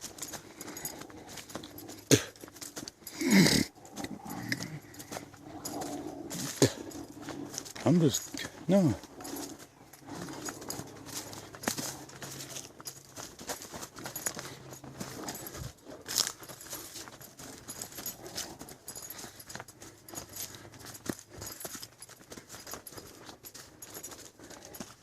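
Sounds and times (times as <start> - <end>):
footsteps on trail: 0.0 - 25.0.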